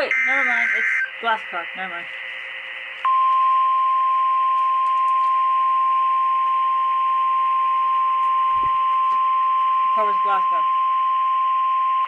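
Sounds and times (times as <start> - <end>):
high-pitched alarm tone: 0.0 - 2.0
radio static hiss: 0.0 - 2.9.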